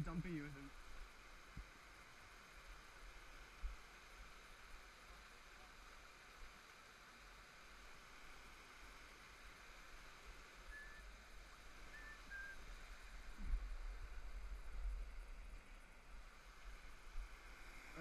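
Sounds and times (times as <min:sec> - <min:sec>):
low rumble on microphone: 0:11.7 - 0:18.0.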